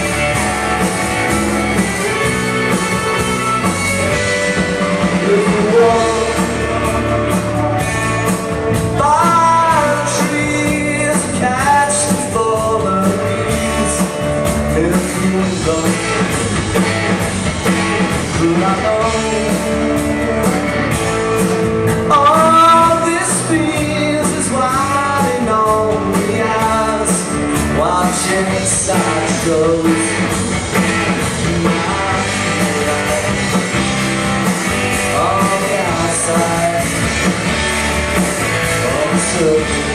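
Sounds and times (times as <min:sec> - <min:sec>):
rock band playing: 0:00.0 - 0:39.9
person singing: 0:01.8 - 0:16.3, 0:18.2 - 0:21.0, 0:21.9 - 0:30.4, 0:31.2 - 0:33.8, 0:35.0 - 0:37.2, 0:38.6 - 0:39.9.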